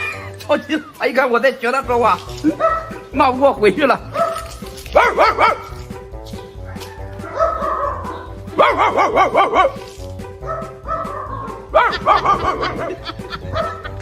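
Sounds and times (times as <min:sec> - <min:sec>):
background music: 0:00.0 - 0:14.0
dog barking: 0:02.4 - 0:03.0, 0:04.1 - 0:05.8, 0:06.6 - 0:14.0.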